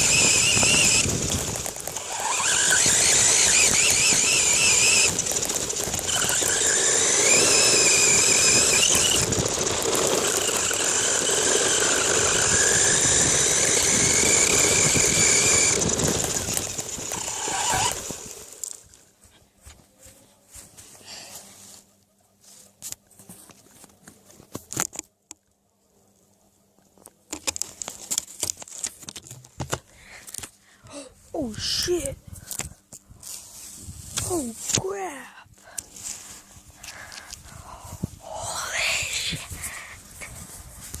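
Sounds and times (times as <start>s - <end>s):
toy car motor whining: 0.0s - 18.8s, 38.2s - 40.1s.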